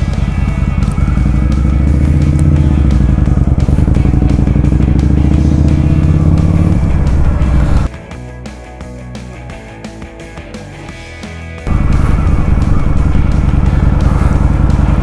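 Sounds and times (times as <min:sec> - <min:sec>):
motorcycle engine running: 0:00.0 - 0:07.9, 0:11.7 - 0:15.0
music playing: 0:00.0 - 0:15.0.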